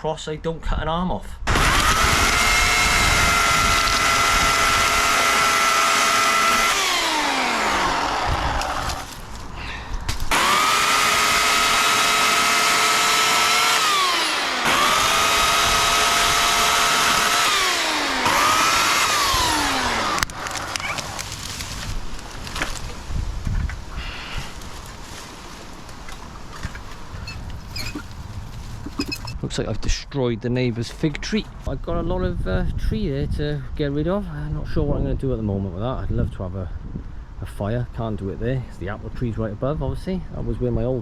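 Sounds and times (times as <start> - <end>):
electric chainsaw whining: 1.5 - 9.4, 10.1 - 22.9.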